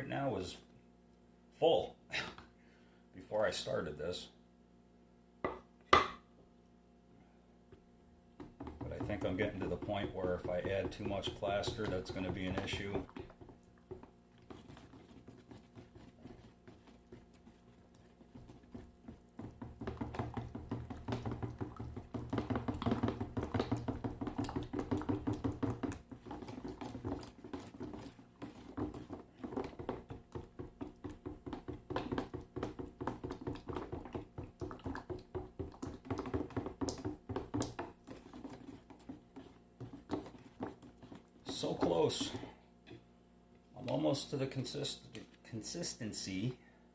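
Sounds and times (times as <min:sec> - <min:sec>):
plaster stirred in metal can: 0:08.4 - 0:42.6.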